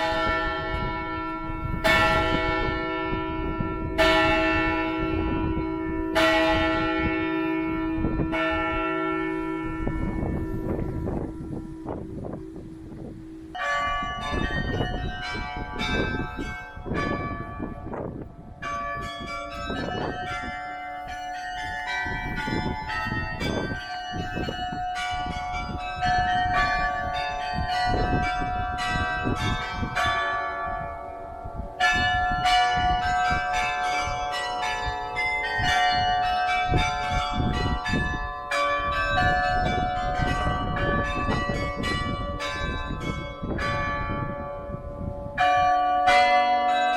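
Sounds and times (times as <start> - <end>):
carillon bells playing a tune: 18.6 - 46.9.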